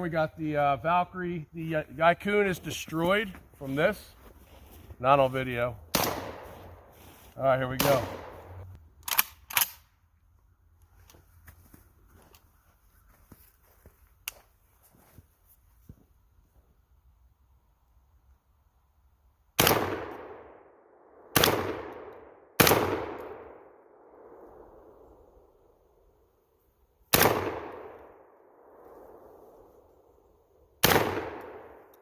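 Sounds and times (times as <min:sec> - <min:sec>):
shotgun shots with echo: 0:05.9 - 0:06.5, 0:21.4 - 0:23.6, 0:27.1 - 0:28.0, 0:30.8 - 0:31.8.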